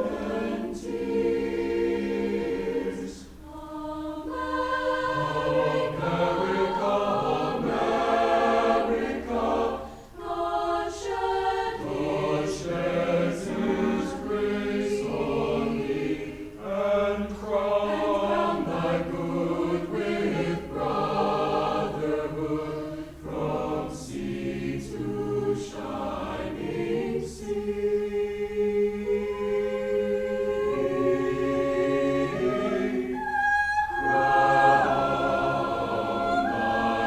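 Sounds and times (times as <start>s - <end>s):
choir singing in parts: 0.0s - 37.0s.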